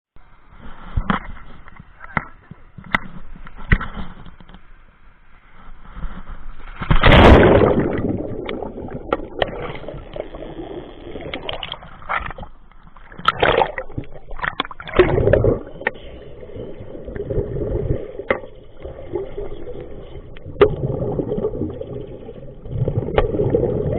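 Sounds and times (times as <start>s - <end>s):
water sloshing and splashing: 6.0s - 23.9s.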